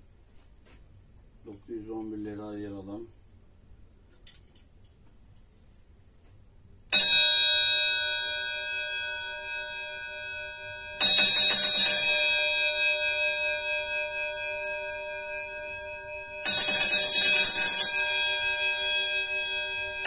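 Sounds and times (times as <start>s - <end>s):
electric bell horn strikes: 6.9s - 20.0s.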